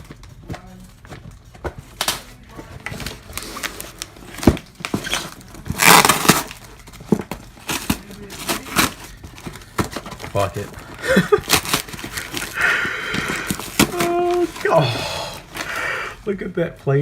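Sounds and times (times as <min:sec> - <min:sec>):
packing tape ripping: 0:02.9 - 0:16.0
knife cutting cardboard box: 0:03.4 - 0:06.6.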